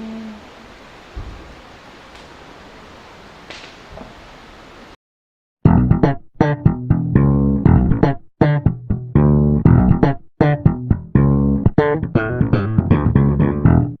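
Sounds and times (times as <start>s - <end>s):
plucked string music: 5.7s - 14.0s.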